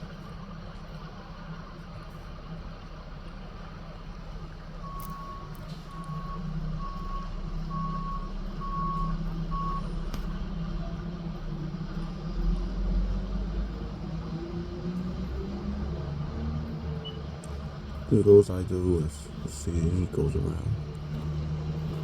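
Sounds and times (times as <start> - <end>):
truck engine running: 0.0 - 22.0
truck reversing alarm beeping: 4.6 - 10.0, 17.0 - 17.3.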